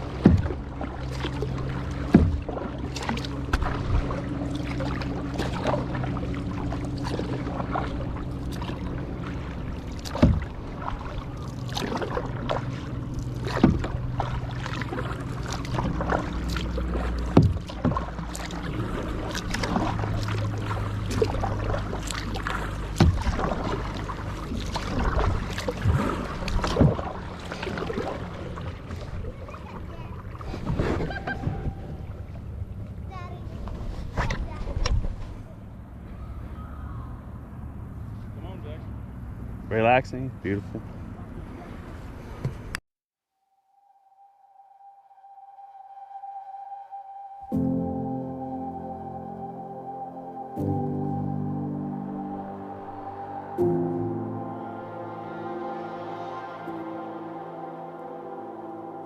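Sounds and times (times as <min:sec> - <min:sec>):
paddle splashes and knocks: 0:00.0 - 0:36.6, 0:40.8 - 0:42.8.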